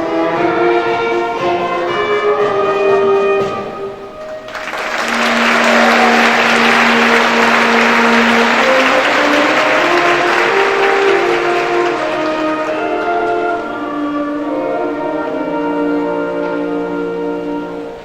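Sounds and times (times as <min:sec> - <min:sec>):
instrumental music: 0:00.0 - 0:18.0
audience applause: 0:04.3 - 0:13.6.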